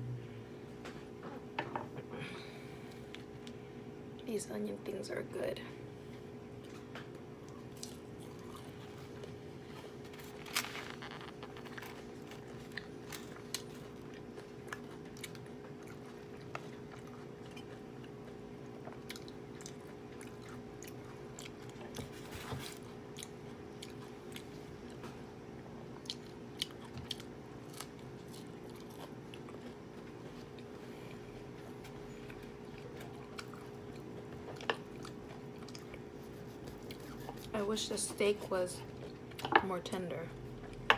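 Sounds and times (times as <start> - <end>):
low hum: 0.0 - 15.4
chewing food with crunches: 6.1 - 39.6.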